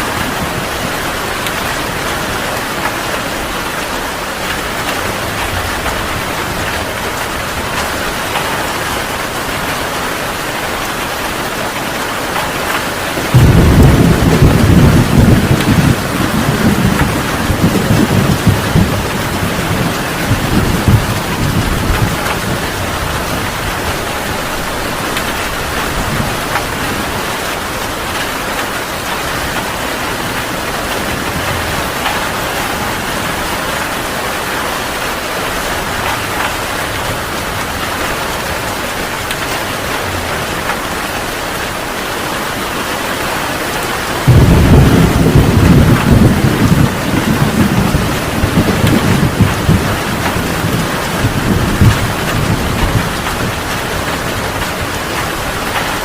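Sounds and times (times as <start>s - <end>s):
heavy rain falling: 0.0s - 56.0s
thunder rumbling: 11.6s - 42.9s, 44.0s - 56.0s
loud thunder rumble: 13.2s - 28.2s, 28.9s - 41.2s, 44.2s - 56.0s.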